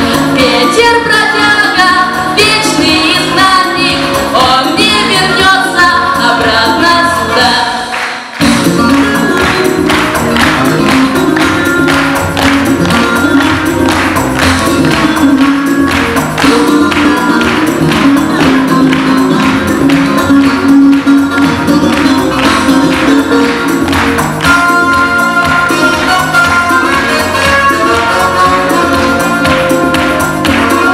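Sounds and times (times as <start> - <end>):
pop music with steady beat: 0.0 - 30.9.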